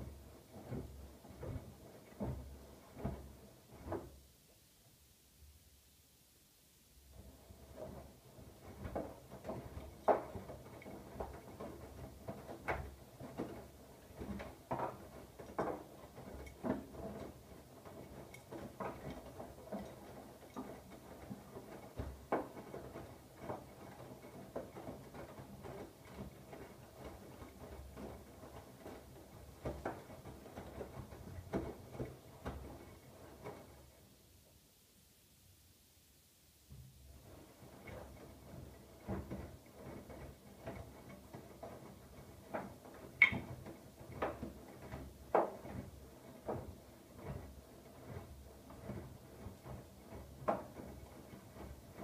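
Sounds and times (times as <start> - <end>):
laundry tumbling with soft knocks: 0.0 - 5.8, 6.9 - 35.6, 36.5 - 52.0
washing machine drum turning: 42.7 - 43.7.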